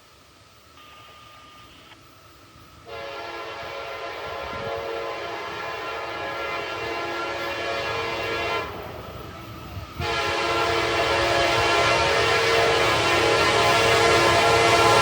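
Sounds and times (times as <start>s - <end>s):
low train rumble: 0.0s - 15.0s
locomotive air horn: 2.8s - 8.9s, 10.0s - 15.0s.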